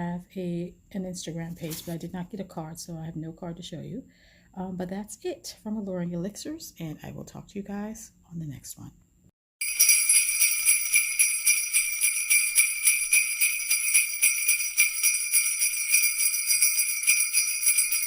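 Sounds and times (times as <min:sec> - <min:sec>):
jingle bells shaken: 0:09.6 - 0:18.0.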